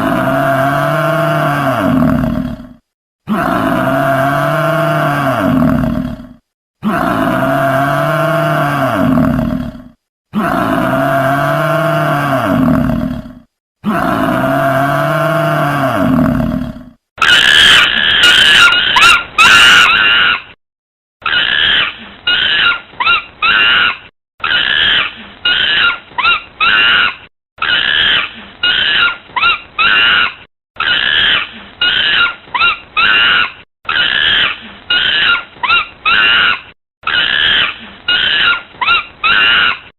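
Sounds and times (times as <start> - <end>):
high animal squealing: 17.2 - 20.6, 21.2 - 39.9.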